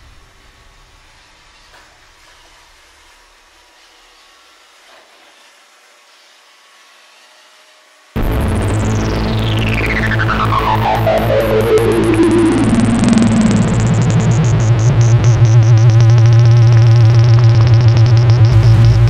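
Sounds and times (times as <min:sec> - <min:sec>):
low drone: 0:08.2 - 0:19.0
pulsing electronic beat: 0:08.2 - 0:19.0
synthesizer sweep: 0:08.2 - 0:19.0.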